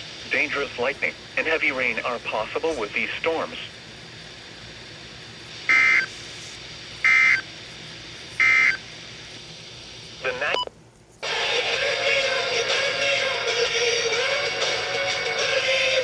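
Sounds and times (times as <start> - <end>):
radio music: 0.0 - 3.7, 10.2 - 16.0
warbling digital data bursts: 5.7 - 6.2, 8.4 - 8.8.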